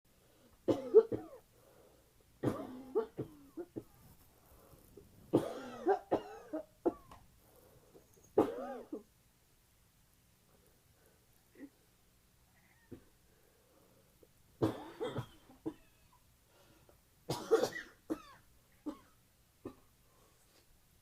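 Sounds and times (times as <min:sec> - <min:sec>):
person coughing harshly: 0:00.7 - 0:01.4, 0:02.4 - 0:04.0, 0:05.3 - 0:07.1, 0:08.4 - 0:09.1, 0:14.6 - 0:15.6, 0:17.3 - 0:19.9.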